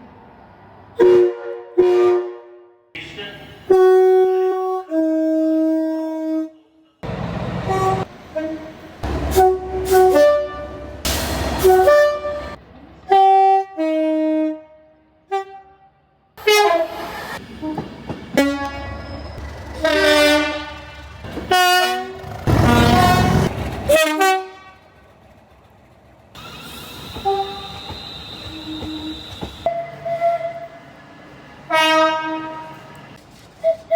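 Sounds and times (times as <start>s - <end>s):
passing train rumble: 0.0s - 2.0s, 7.0s - 15.3s, 16.1s - 33.9s
train horn blasts: 1.0s - 2.8s, 3.7s - 6.7s, 7.6s - 11.0s, 11.6s - 19.1s, 19.7s - 24.8s, 27.0s - 30.9s, 31.7s - 33.0s.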